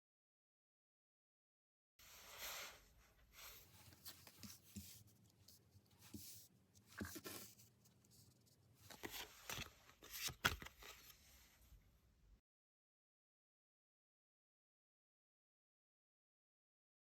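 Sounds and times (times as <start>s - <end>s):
paper card rustles: 3.4s - 11.5s.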